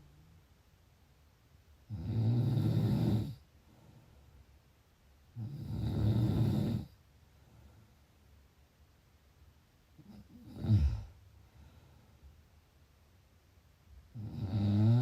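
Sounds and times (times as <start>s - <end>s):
person snoring: 1.9s - 3.4s, 5.4s - 6.9s, 10.0s - 11.2s, 14.2s - 15.0s.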